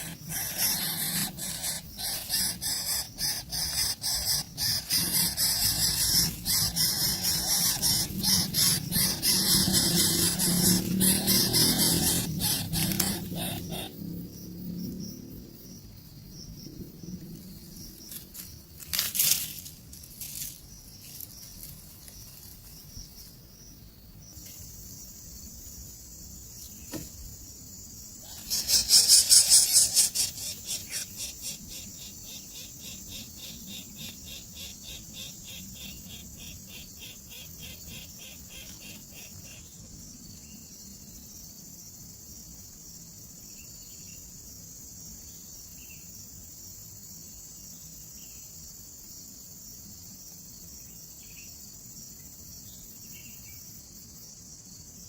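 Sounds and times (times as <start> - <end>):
bursts of rapid pulses: 0.0 - 13.9
crickets droning: 0.0 - 55.0.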